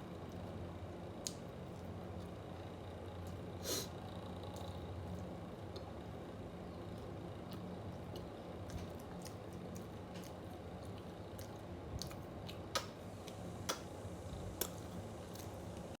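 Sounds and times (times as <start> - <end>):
steady low hum: 0.0 - 16.0
person chewing: 6.9 - 13.8.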